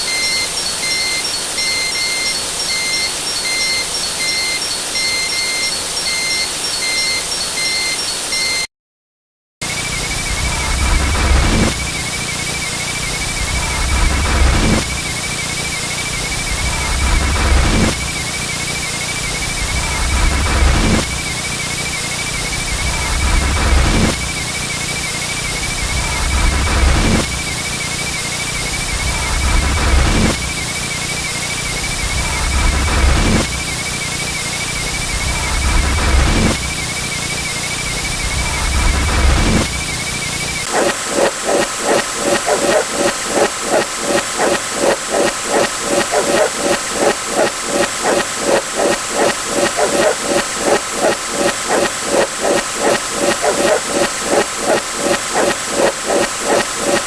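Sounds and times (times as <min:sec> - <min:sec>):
warbling electronic beep: 0:09.6 - 0:57.0.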